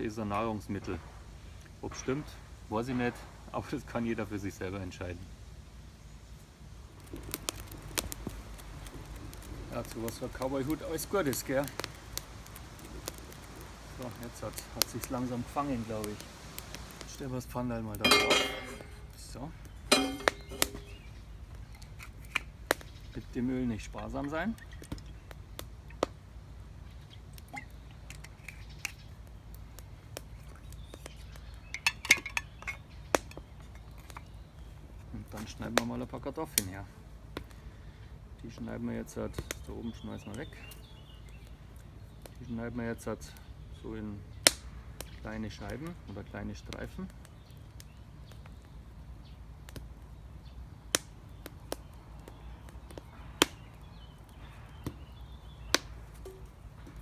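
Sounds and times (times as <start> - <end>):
cookware and utensils clinking: 18.0 - 19.1, 19.9 - 21.0, 31.7 - 32.8.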